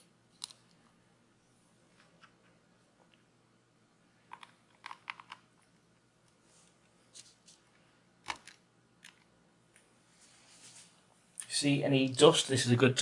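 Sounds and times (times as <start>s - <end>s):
plastic parts clicking: 4.3s - 5.5s, 8.2s - 9.3s.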